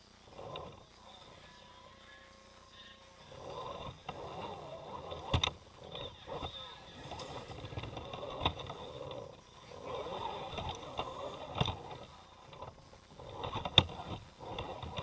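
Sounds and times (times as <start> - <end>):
motor and gears whining: 0.0 - 15.0
toy truck hitting rock: 6.4 - 9.2.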